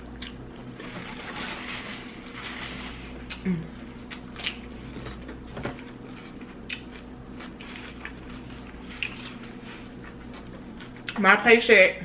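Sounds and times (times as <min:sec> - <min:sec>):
steady low hum: 0:00.0 - 0:12.0
chewing: 0:04.0 - 0:11.2.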